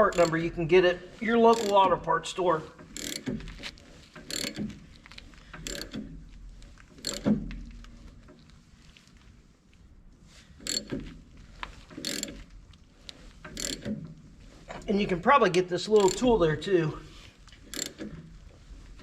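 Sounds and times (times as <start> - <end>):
ratchet wrench clicking: 0.0 - 0.4, 1.5 - 1.8, 2.8 - 3.4, 4.2 - 4.7, 5.5 - 6.1, 7.0 - 7.4, 10.6 - 11.0, 11.9 - 12.4, 13.4 - 13.9, 16.0 - 16.3, 17.6 - 18.2.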